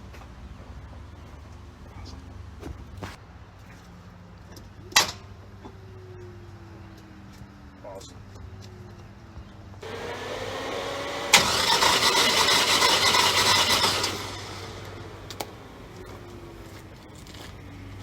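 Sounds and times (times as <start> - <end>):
starter motor cranking engine: 9.8 - 16.1.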